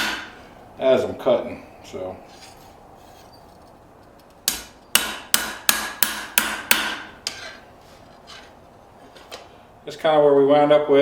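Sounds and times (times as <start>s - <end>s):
hammer striking steel on anvil: 0.0s - 0.4s, 4.5s - 7.6s.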